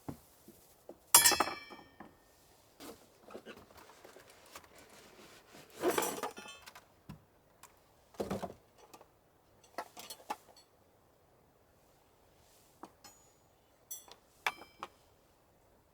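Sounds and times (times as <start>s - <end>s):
objects clinking and knocking: 1.2s - 2.1s, 5.8s - 6.8s.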